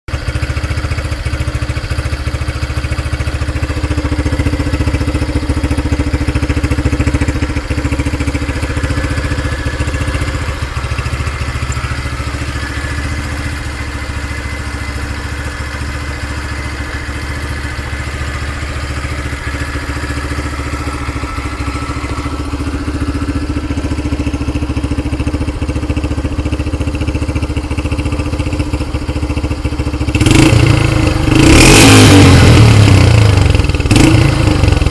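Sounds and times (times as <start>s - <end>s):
motorcycle engine idling: 0.1s - 34.9s.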